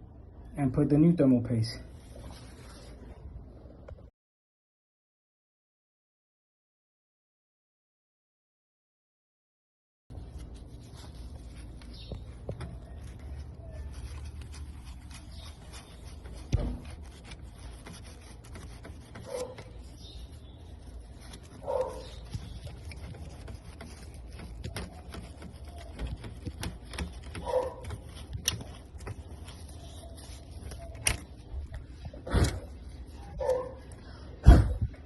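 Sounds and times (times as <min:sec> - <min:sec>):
hands handling hardware clicking: 0:21.2 - 0:31.8.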